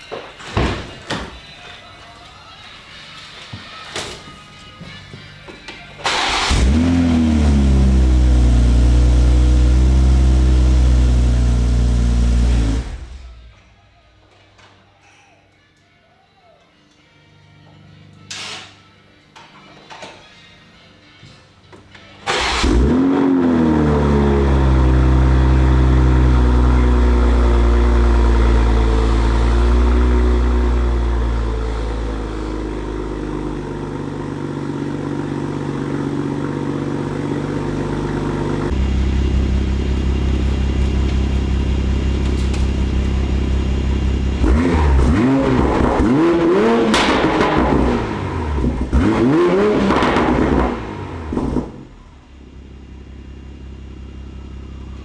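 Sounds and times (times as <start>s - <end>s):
car engine starting and idling: 5.7s - 13.6s, 22.0s - 55.0s
engine revving: 6.0s - 13.4s, 22.2s - 52.0s.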